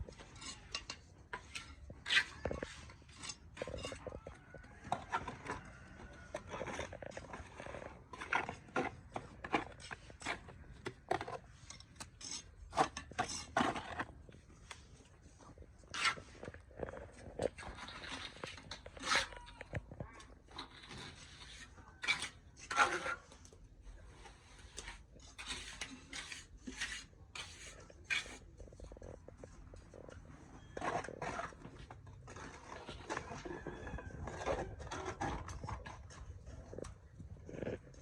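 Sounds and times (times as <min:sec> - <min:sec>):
scraping: 0:24.3 - 0:38.0.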